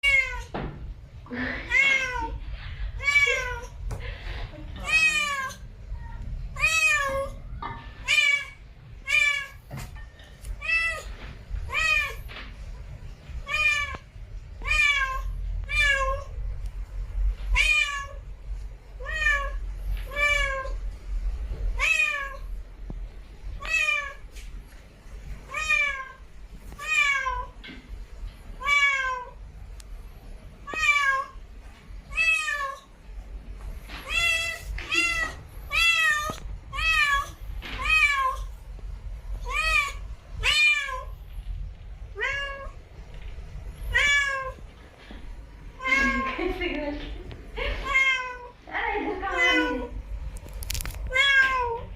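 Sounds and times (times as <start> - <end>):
cat meowing: 0.0 - 0.5, 1.6 - 2.4, 4.8 - 5.6, 6.6 - 9.6, 11.7 - 12.2, 13.4 - 16.4, 17.5 - 18.2, 19.0 - 20.8, 21.8 - 22.5, 23.6 - 24.3, 25.5 - 27.6, 28.6 - 29.4, 30.6 - 31.4, 32.1 - 32.9, 34.0 - 38.5, 39.4 - 41.2, 42.1 - 42.8, 43.9 - 44.6, 45.8 - 46.3, 47.8 - 48.6, 51.1 - 51.9.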